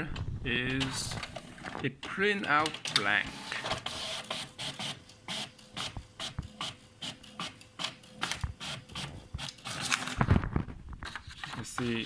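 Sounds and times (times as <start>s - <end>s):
inkjet printer carriage sweeping: 2.9s - 6.8s.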